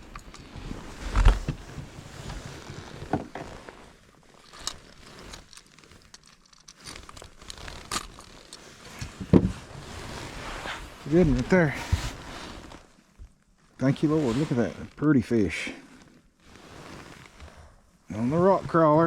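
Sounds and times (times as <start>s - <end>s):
rustling: 0.0s - 19.0s.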